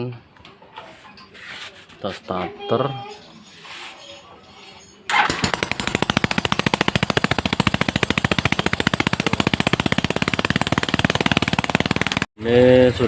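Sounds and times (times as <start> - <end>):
single-cylinder engine running: 5.1 - 12.3.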